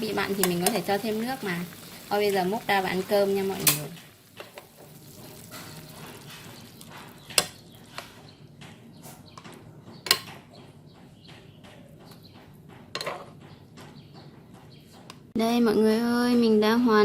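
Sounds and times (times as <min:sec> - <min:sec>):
dishes clinking: 0:03.6 - 0:07.7.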